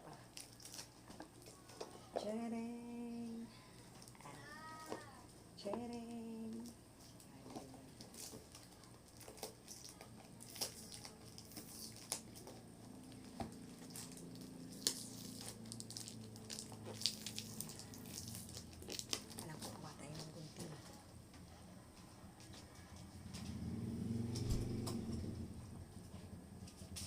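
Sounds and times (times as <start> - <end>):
packaging crinkling and rustling: 0.3 - 1.9, 7.1 - 20.7.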